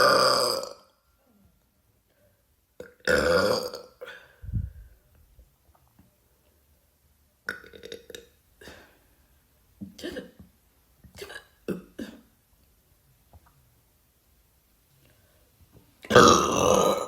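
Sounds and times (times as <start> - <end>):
woman burping: 0.0 - 0.8, 2.8 - 4.4, 7.5 - 8.9, 11.2 - 12.3, 16.1 - 17.0.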